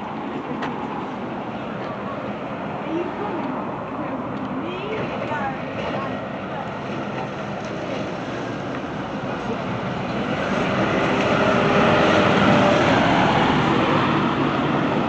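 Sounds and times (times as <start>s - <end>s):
vehicle driving past: 7.8s - 15.0s.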